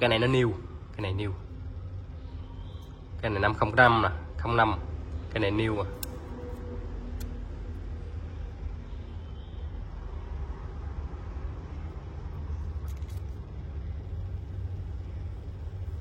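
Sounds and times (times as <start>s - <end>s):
low background rumble: 0.0s - 16.0s.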